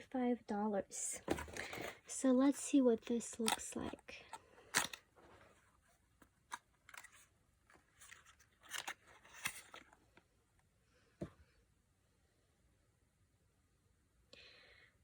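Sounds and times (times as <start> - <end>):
packaging clicks and crinkles: 3.1 - 5.1, 6.4 - 10.0.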